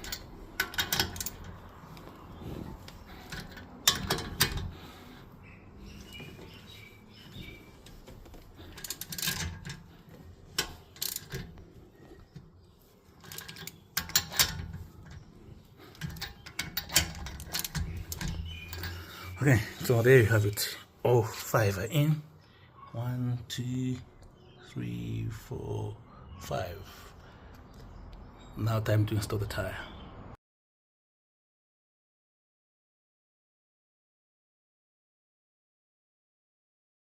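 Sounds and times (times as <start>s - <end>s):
wrench clicking and clanking: 0.0s - 1.7s, 3.2s - 4.8s, 5.9s - 11.8s, 13.2s - 15.3s, 15.9s - 19.1s.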